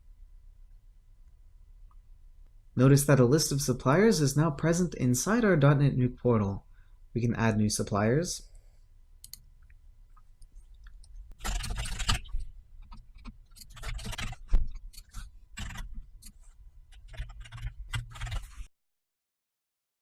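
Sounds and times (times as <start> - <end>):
faint low hum: 0.0 - 18.7
computer keyboard typing: 10.8 - 18.7.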